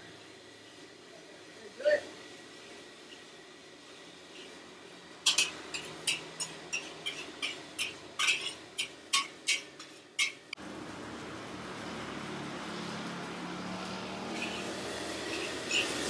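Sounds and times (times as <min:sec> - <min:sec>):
rapid metallic clinking: 0:05.2 - 0:10.6.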